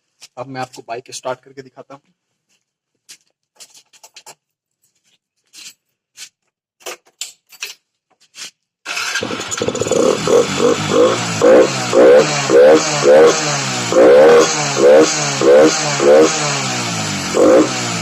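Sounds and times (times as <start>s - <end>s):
motorcycle engine starting and running: 8.9s - 18.0s.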